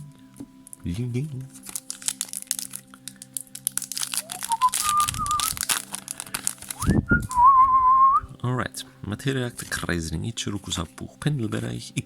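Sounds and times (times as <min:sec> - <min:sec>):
background music: 0:00.0 - 0:12.0
foil wrapper crinkling: 0:00.7 - 0:07.6
person whistling a tune: 0:04.2 - 0:05.6, 0:06.8 - 0:08.4.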